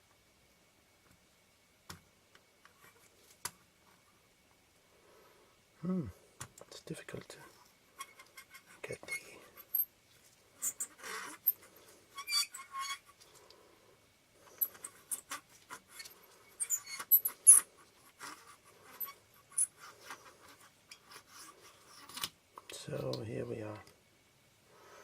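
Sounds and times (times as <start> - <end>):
small lens parts clicking and scraping: 7.9 - 13.6, 14.4 - 23.2.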